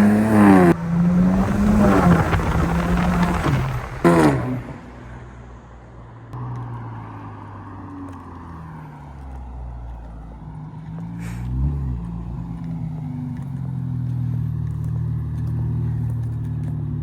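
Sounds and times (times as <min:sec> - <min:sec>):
car engine revving: 0:00.0 - 0:05.5.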